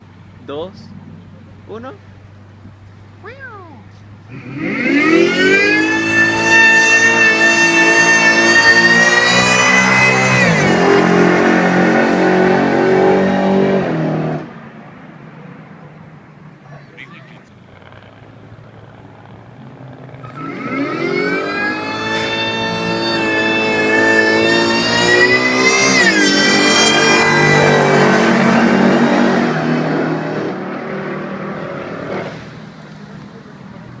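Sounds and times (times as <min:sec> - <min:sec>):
car engine at full throttle: 0:03.9 - 0:16.5, 0:17.2 - 0:34.0
supercharger whine: 0:04.0 - 0:13.3, 0:17.3 - 0:30.8.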